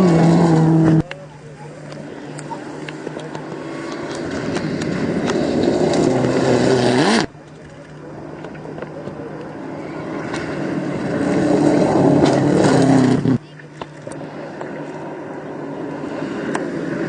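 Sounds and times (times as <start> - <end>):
rally car engine revving: 0.0 - 1.1, 2.4 - 7.4, 10.0 - 13.4.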